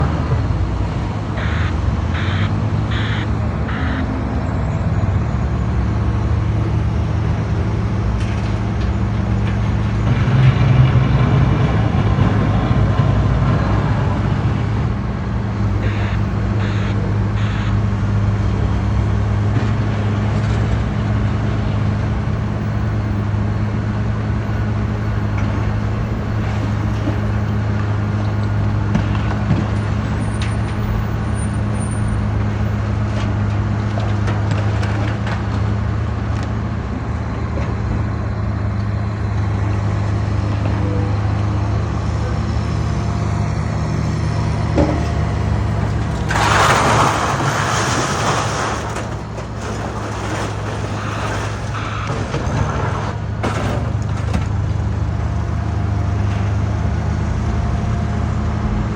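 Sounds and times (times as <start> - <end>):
heavy diesel machine running: 0.0 - 58.9
reversing alarm beeping: 1.4 - 4.1, 15.8 - 17.8.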